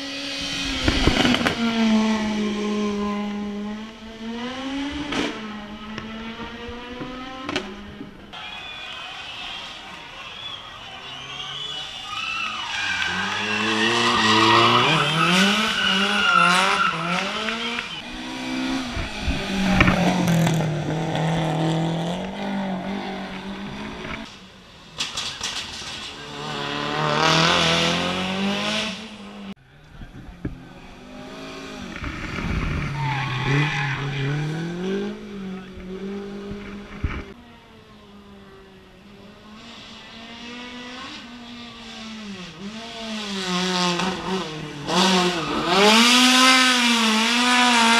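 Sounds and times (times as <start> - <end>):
race car engine revving: 0.0 - 8.3, 12.7 - 24.3, 25.8 - 37.4, 38.3 - 47.9
tyres squealing: 8.4 - 18.0.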